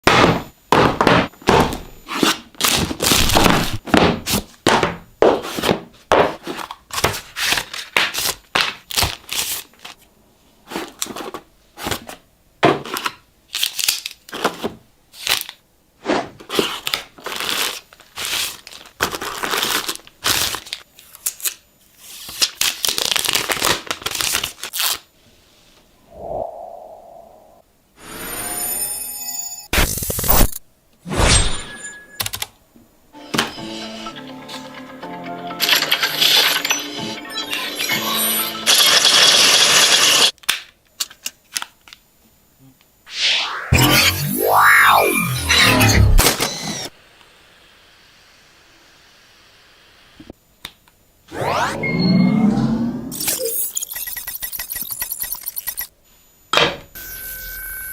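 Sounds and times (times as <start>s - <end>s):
packaging torn and crinkled: 13.5s - 14.3s, 16.6s - 21.6s, 22.2s - 25.1s.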